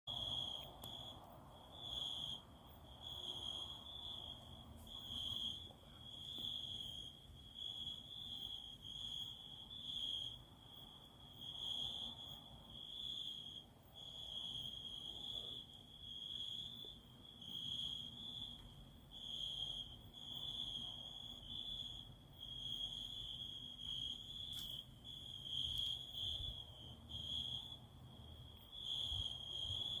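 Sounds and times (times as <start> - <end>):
cricket chirping: 0.1 - 30.0.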